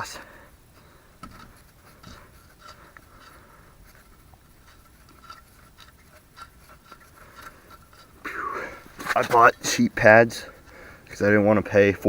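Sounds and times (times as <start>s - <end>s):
low background hiss: 0.0s - 12.0s
hands clicking and scraping: 1.2s - 9.6s.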